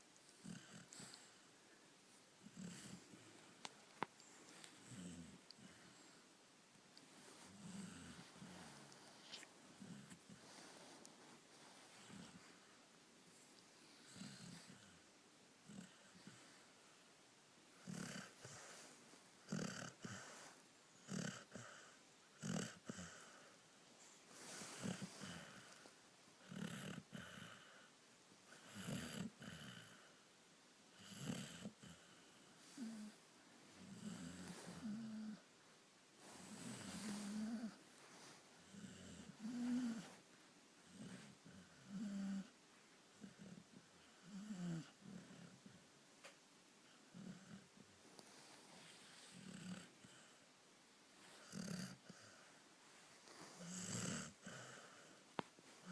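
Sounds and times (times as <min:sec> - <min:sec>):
rasping snore: 0:17.8 - 0:18.8, 0:19.5 - 0:20.4, 0:21.0 - 0:21.8, 0:22.4 - 0:23.4, 0:36.4 - 0:37.8, 0:38.7 - 0:40.2, 0:51.4 - 0:52.3, 0:53.5 - 0:55.1
person snoring: 0:53.6 - 0:54.9.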